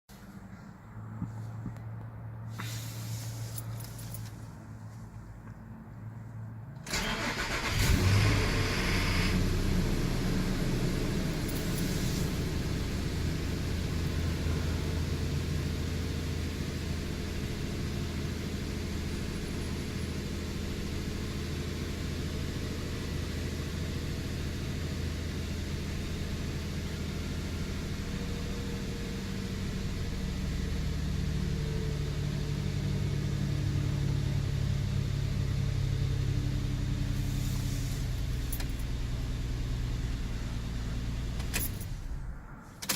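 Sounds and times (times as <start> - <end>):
loud engine start-up noise: 6.8 - 10.4
car engine idling: 6.8 - 42.9.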